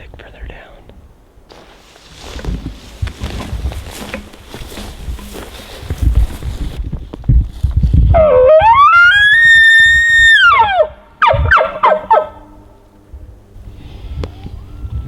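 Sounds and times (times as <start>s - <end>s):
elk bugling: 8.1s - 15.0s.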